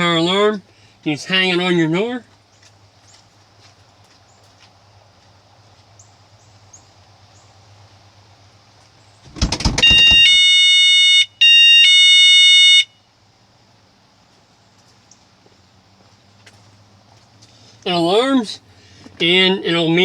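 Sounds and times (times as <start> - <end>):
door rattling: 9.2 - 10.5
two-pitch electronic alarm tone: 9.4 - 12.9.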